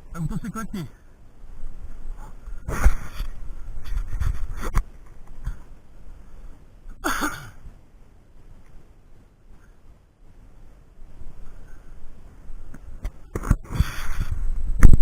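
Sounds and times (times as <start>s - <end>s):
rustling through undergrowth: 1.0s - 6.9s.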